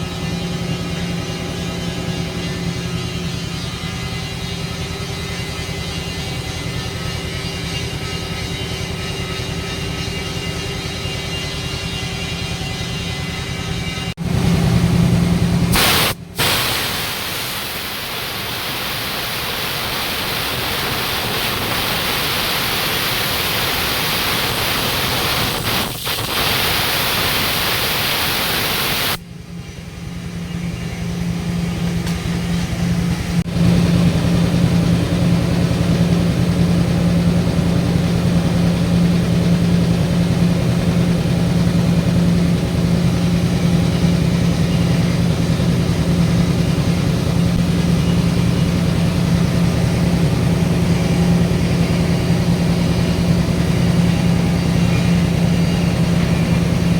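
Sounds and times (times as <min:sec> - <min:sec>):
low machine hum: 0:00.0 - 0:56.9
welding arc crackling hiss: 0:15.8 - 0:29.2.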